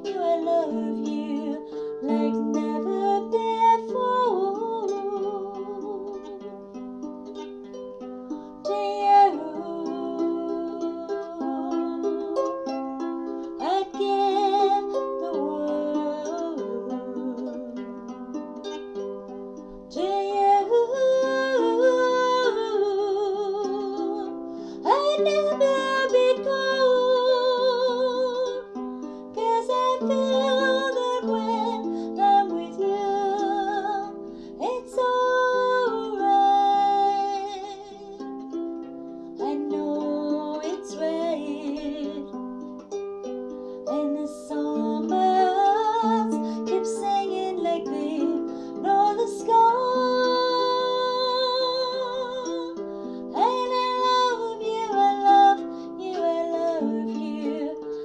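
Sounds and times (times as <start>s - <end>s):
woman singing: 0.0s - 6.6s, 8.6s - 18.4s, 19.9s - 38.4s, 39.4s - 42.6s, 43.9s - 58.0s
plucked harp: 0.0s - 58.0s.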